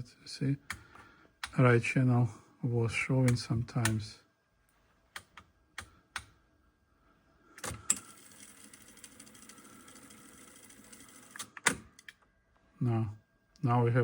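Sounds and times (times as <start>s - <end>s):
tape hiss: 0.0s - 11.4s, 12.2s - 14.0s.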